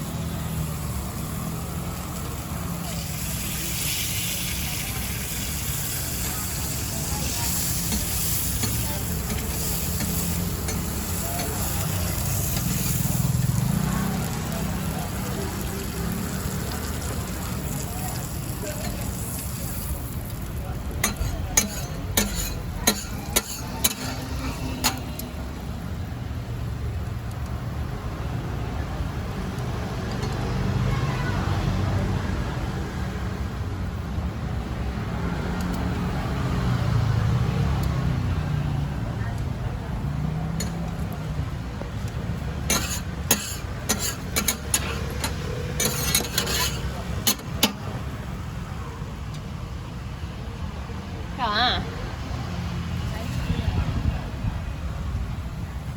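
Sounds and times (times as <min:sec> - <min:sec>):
street traffic hum: 0:00.0 - 0:55.9
utensil clacking on frying pan: 0:06.7 - 0:13.2, 0:21.0 - 0:25.0, 0:42.7 - 0:47.8.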